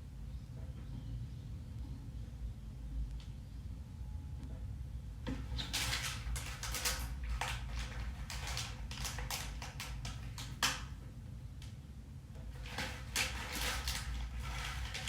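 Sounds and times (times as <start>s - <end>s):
plastic beads rattling into hose: 5.4s - 10.9s, 12.5s - 15.0s.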